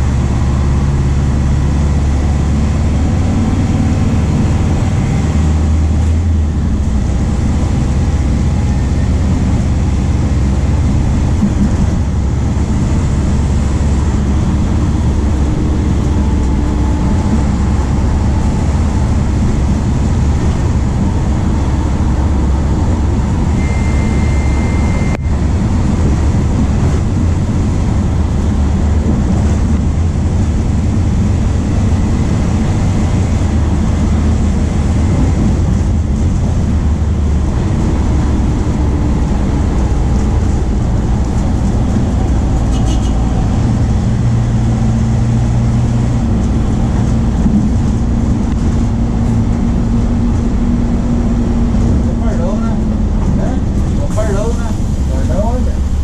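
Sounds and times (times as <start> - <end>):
bus diesel engine droning: 0.0 - 56.0
short high beep: 23.5 - 25.4.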